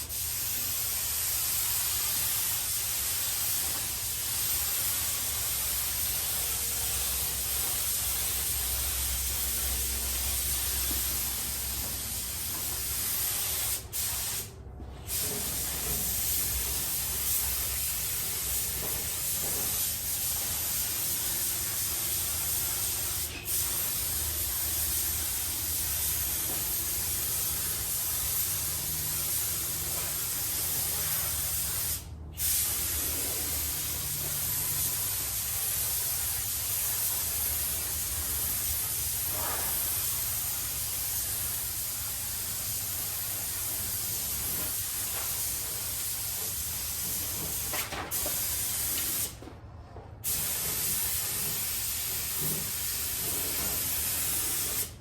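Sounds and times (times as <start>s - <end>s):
spray gun hissing: 0.0s - 14.5s, 15.1s - 49.4s, 50.2s - 55.0s.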